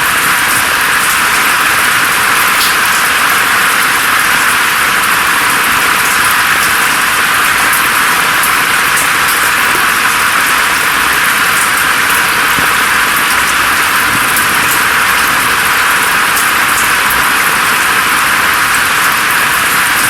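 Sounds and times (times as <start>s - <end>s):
rain falling through foliage: 0.0s - 20.0s
water drops ticking: 2.4s - 5.4s.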